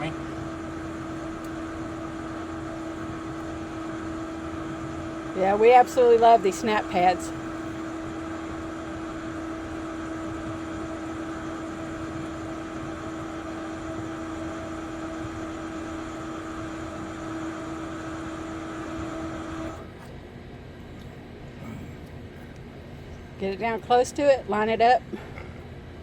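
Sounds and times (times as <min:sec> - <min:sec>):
electric motor humming: 0:00.0 - 0:19.9.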